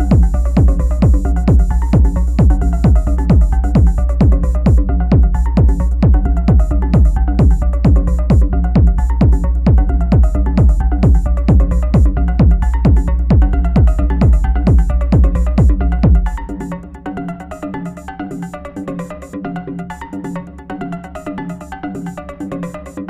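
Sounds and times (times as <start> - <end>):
kick drum sweeping down in pitch: 0.0 - 16.6
sustained low bass: 0.0 - 17.3.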